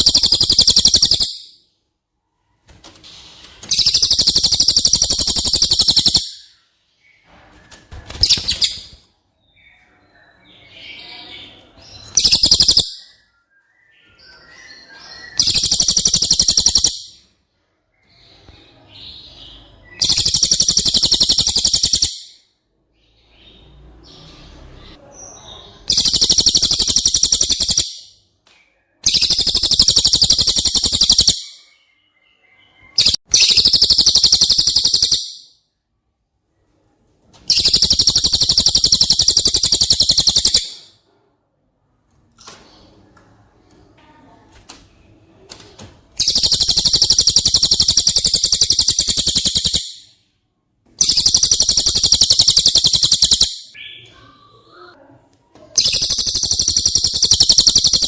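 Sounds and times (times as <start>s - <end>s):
faint soft bird chirps: 3.4s - 35.7s, 55.8s - 58.0s
bird singing high buzzing trills: 3.7s - 6.2s, 29.1s - 31.4s, 32.9s - 35.3s, 37.5s - 40.6s, 51.0s - 53.5s, 55.9s - 58.0s.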